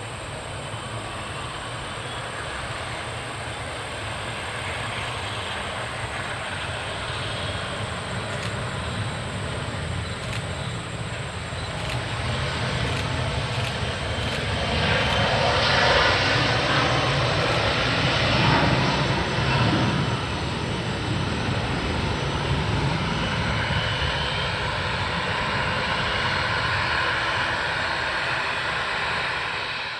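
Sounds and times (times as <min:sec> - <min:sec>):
jet engines roaring: 0:00.0 - 0:29.9.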